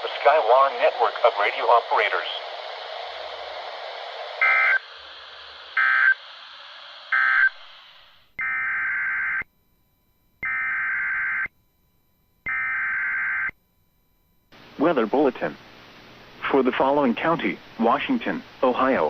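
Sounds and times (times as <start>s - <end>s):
radio static: 0.0s - 3.6s, 4.4s - 4.9s.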